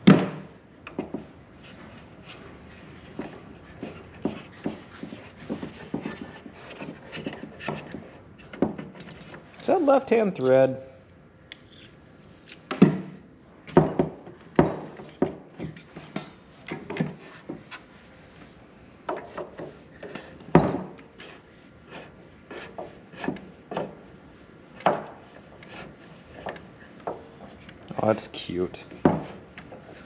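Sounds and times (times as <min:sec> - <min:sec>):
hand tools and metal parts clacking: 0:19.2 - 0:20.6.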